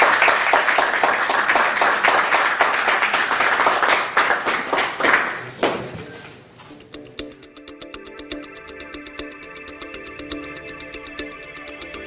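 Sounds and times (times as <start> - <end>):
audience clapping: 0.0 - 6.9.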